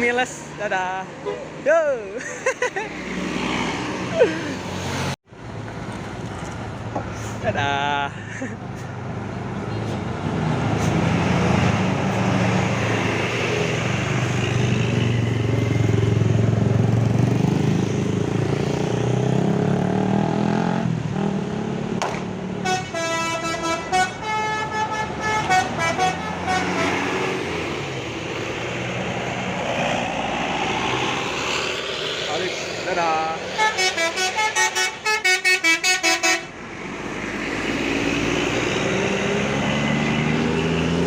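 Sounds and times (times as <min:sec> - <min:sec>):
bus engine passing: 0:00.0 - 0:41.0
melodic bus horn: 0:01.2 - 0:01.5, 0:22.6 - 0:27.4, 0:33.5 - 0:36.6.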